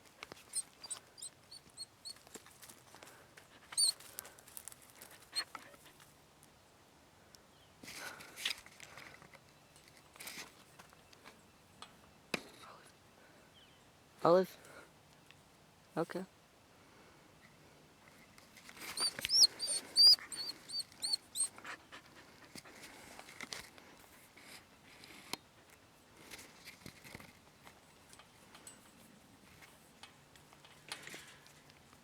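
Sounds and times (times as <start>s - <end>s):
small shuffling sounds: 0.0s - 6.2s, 18.0s - 32.0s
dog whimpering: 19.0s - 22.0s
dog panting: 19.0s - 23.2s.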